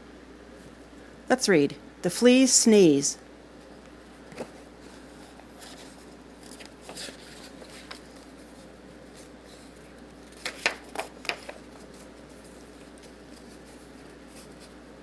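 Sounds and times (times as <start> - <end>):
paper rustling: 4.3 - 14.8.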